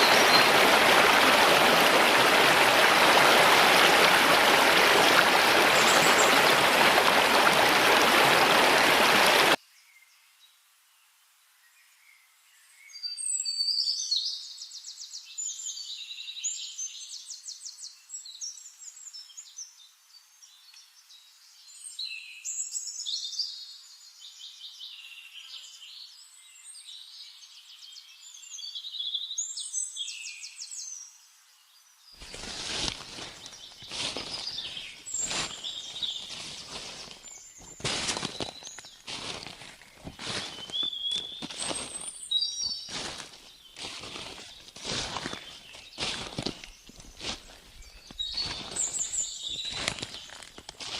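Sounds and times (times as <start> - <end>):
rushing stream water: 0.0 - 9.6, 32.2 - 50.9
songbirds trilling: 0.0 - 9.6, 32.2 - 50.9.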